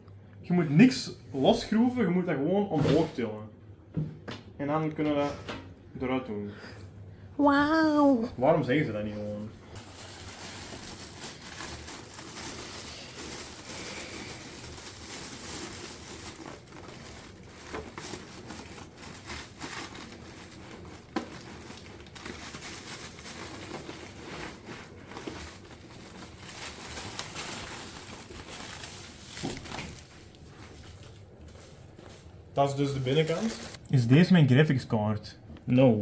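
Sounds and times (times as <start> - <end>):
packaging rustling and crinkling: 9.7 - 33.8.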